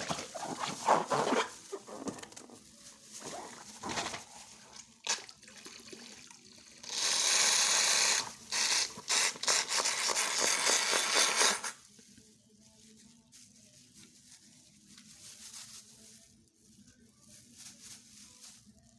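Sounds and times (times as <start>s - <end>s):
loud hiss: 6.8s - 11.8s.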